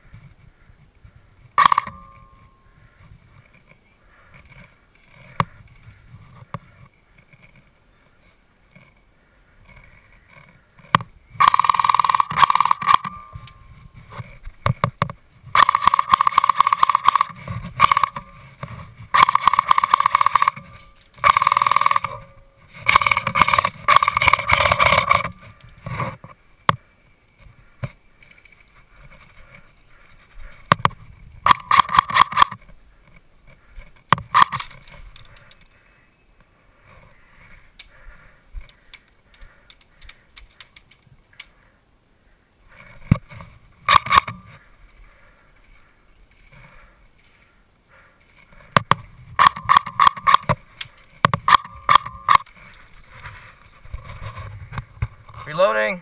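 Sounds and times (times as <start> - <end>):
airsoft rifle firing full auto: 11.4 - 13.1, 15.6 - 18.2, 19.1 - 22.2.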